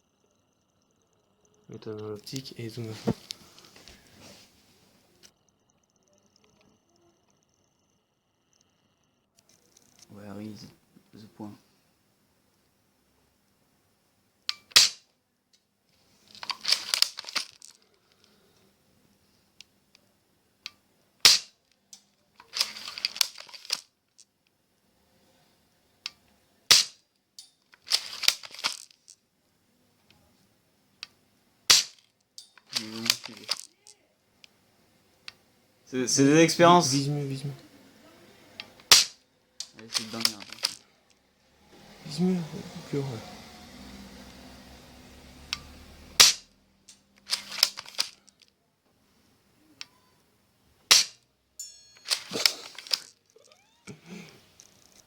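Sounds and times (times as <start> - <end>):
airsoft shotgun firing crack: 14.7 - 15.0, 21.2 - 21.5, 26.7 - 27.0, 31.7 - 32.0, 38.9 - 39.2, 46.2 - 46.5, 50.9 - 51.2
shotgun pump rattling clacks: 22.4 - 23.8, 27.8 - 29.0, 31.7 - 33.7, 38.9 - 40.8, 47.2 - 48.2, 52.0 - 53.1
shotgun pump racking clicks: 38.6 - 40.8, 47.2 - 48.2, 52.0 - 53.1.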